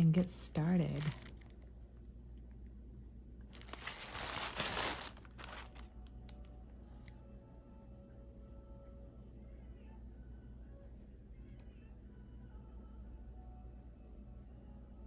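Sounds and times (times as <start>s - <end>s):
packaging crinkling and tearing: 0.9s - 1.7s, 3.5s - 6.1s.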